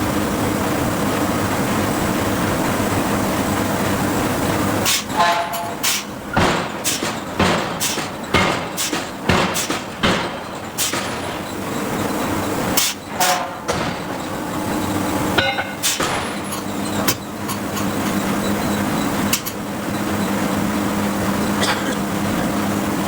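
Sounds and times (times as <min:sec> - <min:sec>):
steady machine hum: 0:00.0 - 0:23.0
forging hammer striking steel: 0:04.8 - 0:11.5, 0:12.8 - 0:14.3, 0:15.3 - 0:18.2
ringing metallic clanks: 0:05.1 - 0:11.8, 0:12.8 - 0:19.6.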